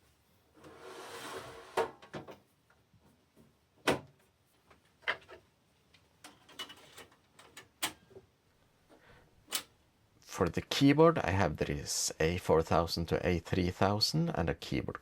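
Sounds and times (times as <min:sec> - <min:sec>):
sliding scrape on computer case: 0:00.6 - 0:01.9.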